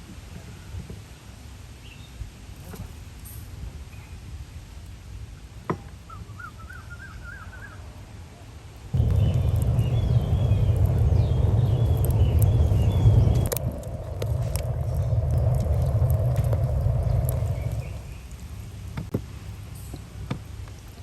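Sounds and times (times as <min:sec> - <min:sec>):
loud steady rumbling: 0:09.0 - 0:19.1.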